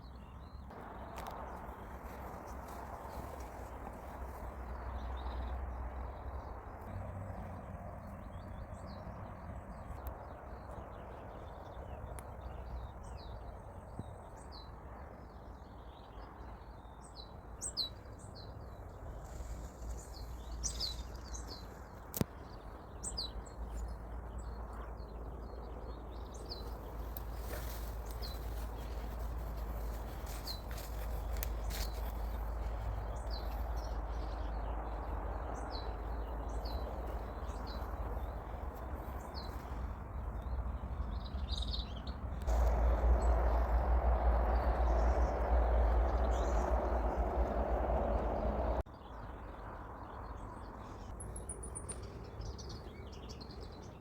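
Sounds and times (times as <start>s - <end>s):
small birds chirping: 15.4s - 54.0s
steady low rumble: 18.6s - 50.8s.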